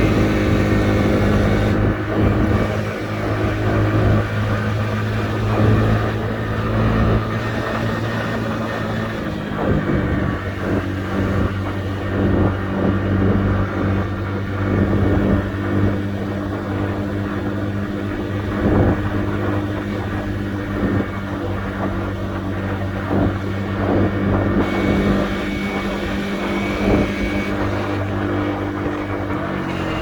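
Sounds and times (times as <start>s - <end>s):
scooter engine idling: 0.0s - 3.0s, 24.5s - 30.0s.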